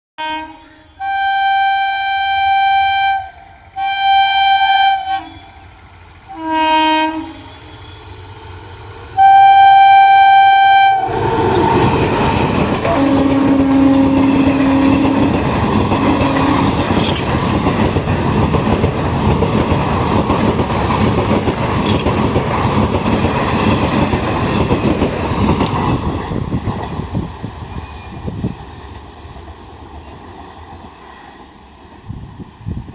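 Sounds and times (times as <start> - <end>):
lower-pitched horn: 0.2 - 5.7, 6.3 - 8.1, 9.2 - 12.0, 12.8 - 15.3
train horn blasts: 0.2 - 5.7, 6.3 - 8.2, 9.2 - 11.9, 12.8 - 15.4, 16.1 - 16.8
train passing rumble: 0.2 - 32.9
wheels clacking over rail joints: 11.1 - 32.0.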